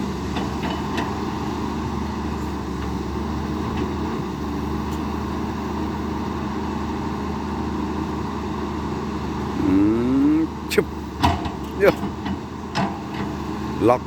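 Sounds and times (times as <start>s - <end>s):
heavy machine engine humming: 0.0s - 14.0s.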